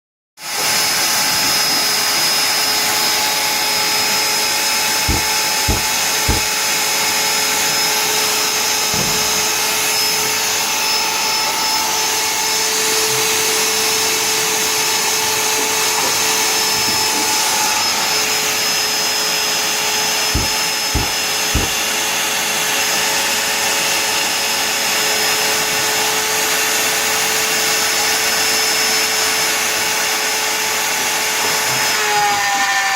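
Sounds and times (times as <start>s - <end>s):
wood router spindle whine: 0.5s - 32.9s
short dull knocks: 5.1s - 6.6s, 20.4s - 21.9s.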